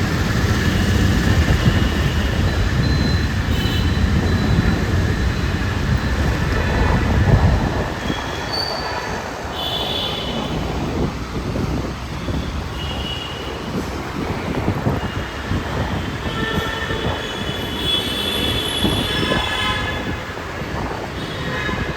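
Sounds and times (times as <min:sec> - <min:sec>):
train rumbling on rails: 0:00.0 - 0:21.9
train wheels squealing: 0:02.4 - 0:10.2.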